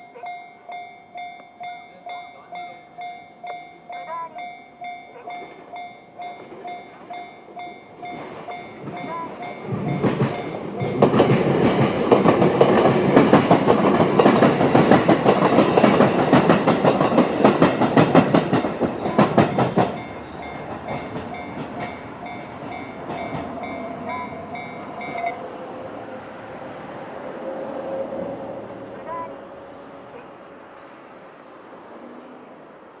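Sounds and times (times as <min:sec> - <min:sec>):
level crossing warning bell: 0:00.0 - 0:25.5, 0:29.0 - 0:29.4
train wheels clacking on rail joints: 0:00.6 - 0:25.4.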